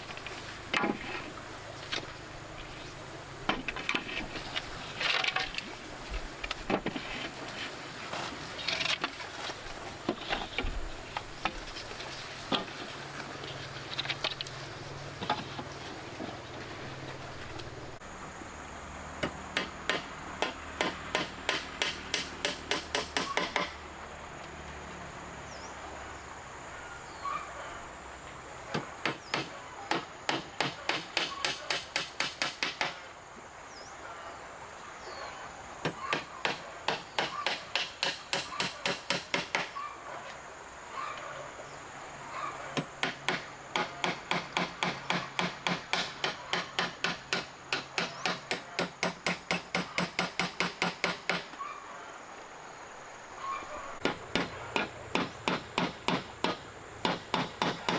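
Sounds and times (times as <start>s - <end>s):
tool striking hard surface: 19.6s - 23.8s, 54.0s - 57.9s.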